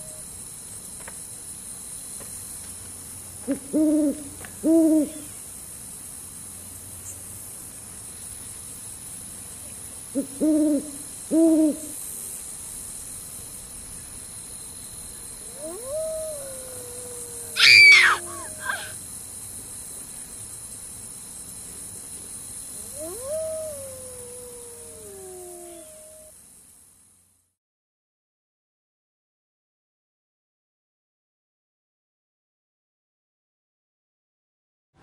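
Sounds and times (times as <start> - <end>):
owl hooting: 3.4 - 5.4, 10.1 - 12.0, 15.4 - 19.0, 22.8 - 26.3
sharp high bird call: 17.6 - 19.0.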